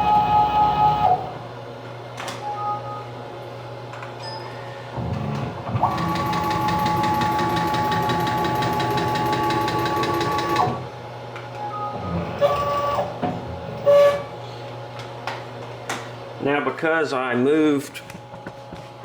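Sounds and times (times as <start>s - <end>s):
stepper motor whining and buzzing: 0.0s - 1.4s.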